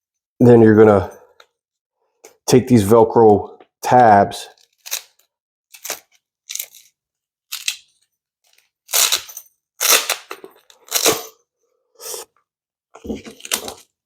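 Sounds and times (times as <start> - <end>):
velcro ripping: 4.7 - 6.8, 8.8 - 11.4.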